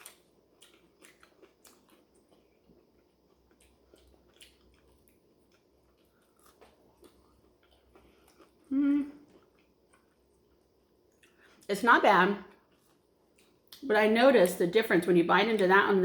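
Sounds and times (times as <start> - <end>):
person chewing: 0.0 - 11.7, 12.5 - 13.8
person humming: 8.7 - 9.2.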